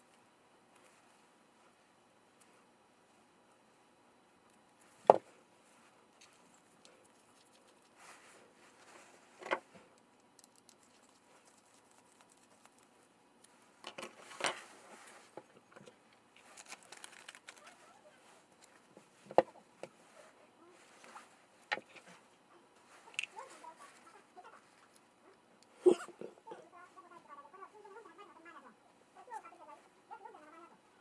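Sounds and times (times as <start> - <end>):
rustling: 4.7 - 15.4, 16.4 - 25.1.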